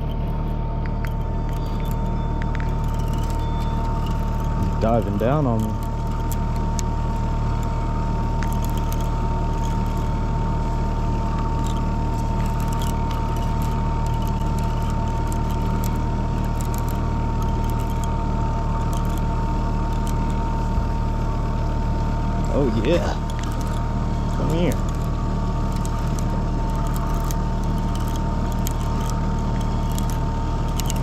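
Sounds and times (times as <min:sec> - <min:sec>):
faint clicks: 0:00.0 - 0:04.8
boat motor humming: 0:00.0 - 0:31.0
high whine: 0:00.0 - 0:31.0.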